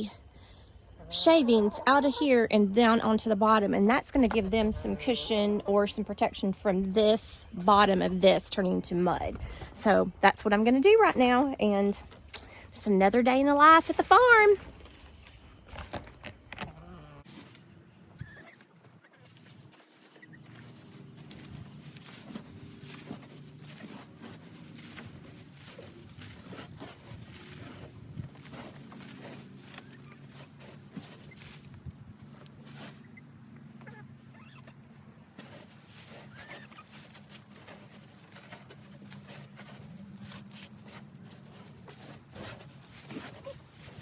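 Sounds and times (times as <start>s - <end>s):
raking loose wood shavings: 19.8s - 31.8s, 35.4s - 44.0s
shavings being scraped: 35.4s - 44.0s.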